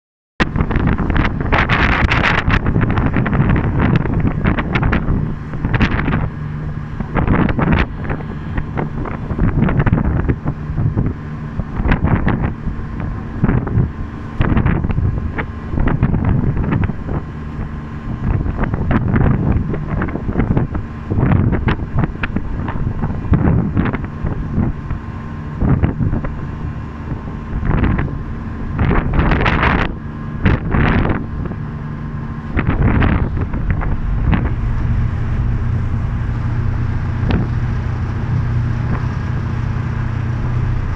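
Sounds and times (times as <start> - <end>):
gusty wind buffeting microphone: 0.4 - 40.9
faint low hum: 31.0 - 40.9.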